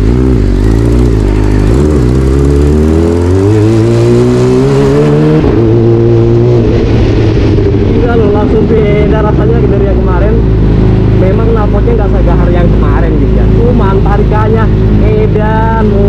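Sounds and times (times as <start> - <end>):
motorcycle engine accelerating: 0.0 - 16.0.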